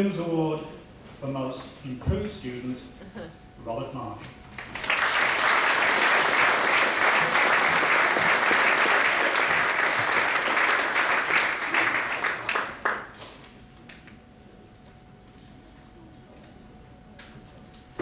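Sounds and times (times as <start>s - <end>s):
audience applauding: 4.5s - 13.4s.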